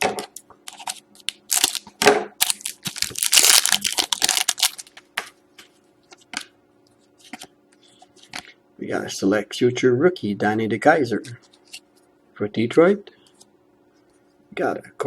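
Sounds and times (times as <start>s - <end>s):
foil wrapper tearing and crinkling: 0.7s - 5.0s.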